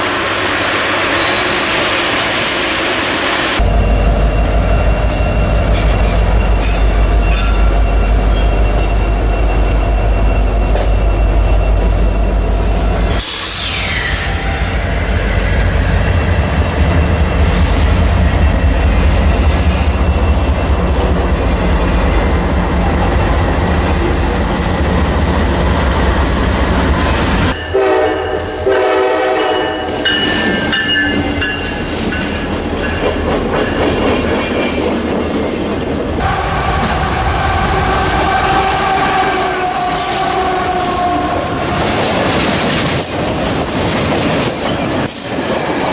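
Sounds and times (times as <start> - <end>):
train rumbling past: 0.0 - 45.9
train horn chord: 27.7 - 30.1, 36.2 - 41.8.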